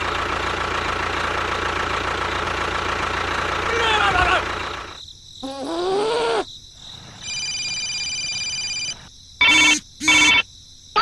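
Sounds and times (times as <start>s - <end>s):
electronic phone ringtone: 7.2s - 10.4s.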